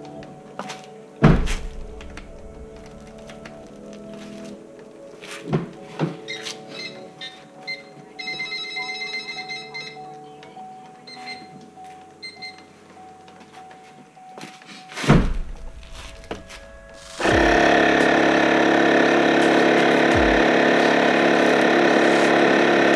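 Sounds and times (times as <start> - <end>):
music with repeating high notes: 0.0 - 22.9
loud knock: 17.2 - 18.2
loud steady motor: 17.2 - 22.9.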